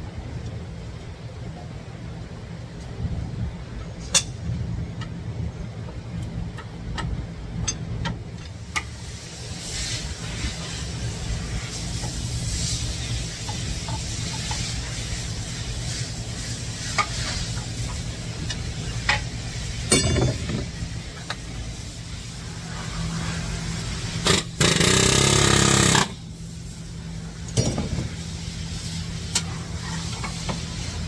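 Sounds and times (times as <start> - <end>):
steady low hum: 0.0 - 31.0
metal knocks: 19.9 - 20.7
power tool running: 24.2 - 26.2.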